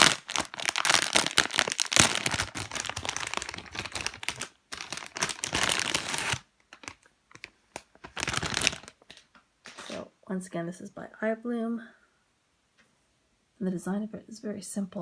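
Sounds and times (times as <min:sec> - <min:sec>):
plastic packaging crinkling: 0:00.0 - 0:10.0.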